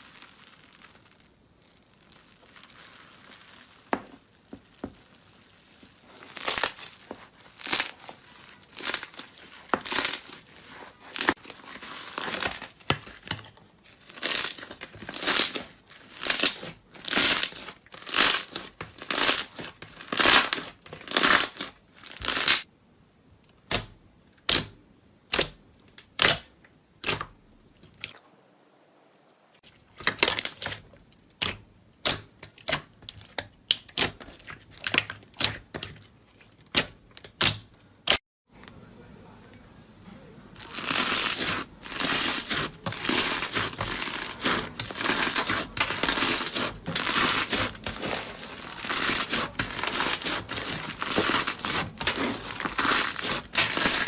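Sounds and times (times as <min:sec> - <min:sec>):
slime squeezed by hand crackling: 0:00.0 - 0:13.2, 0:14.0 - 0:22.6.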